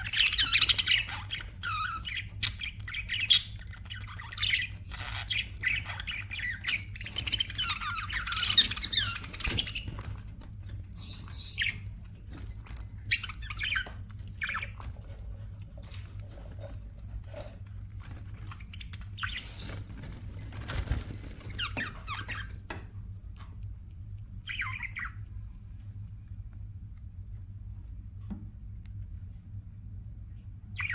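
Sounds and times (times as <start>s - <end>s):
budgerigars chirping: 0.0s - 10.2s, 11.0s - 11.9s, 18.6s - 20.2s, 24.5s - 25.2s
steady low hum: 0.0s - 30.9s.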